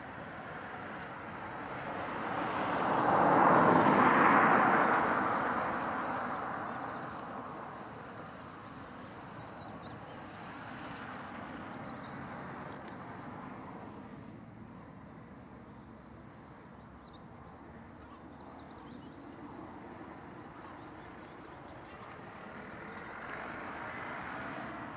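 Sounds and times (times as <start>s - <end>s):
tractor with plough passing: 21.1s - 24.9s.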